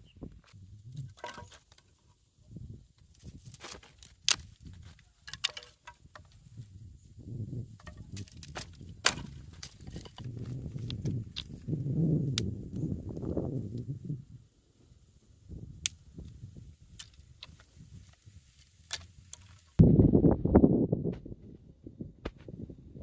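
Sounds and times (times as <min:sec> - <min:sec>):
light clinks of handled objects: 0:07.7 - 0:11.7.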